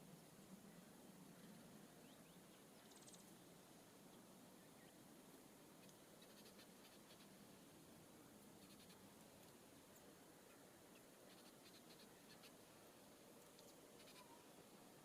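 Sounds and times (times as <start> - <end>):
songbird high calls: 14.0 - 14.6.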